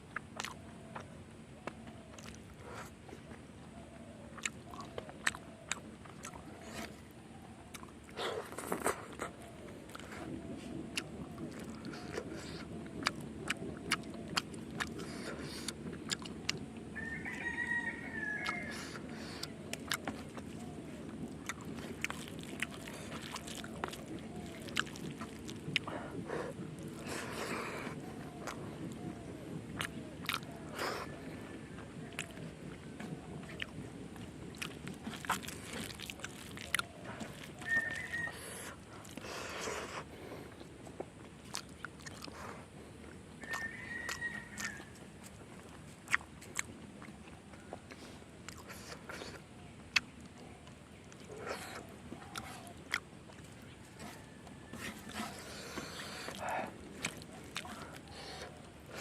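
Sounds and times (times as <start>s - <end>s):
person chewing: 0.0s - 3.4s, 4.4s - 16.8s, 18.4s - 31.2s, 31.8s - 59.0s
rooster crowing: 16.9s - 19.2s, 37.6s - 38.7s, 43.4s - 45.0s, 53.8s - 56.7s.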